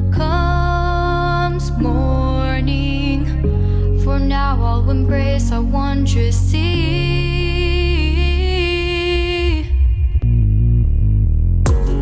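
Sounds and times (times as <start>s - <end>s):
steady bass: 0.0s - 12.0s.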